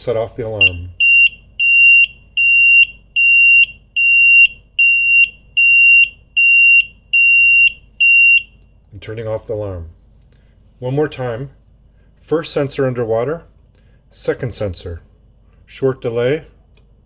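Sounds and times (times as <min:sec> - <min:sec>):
high-pitched alarm beeps: 0:00.6 - 0:08.6.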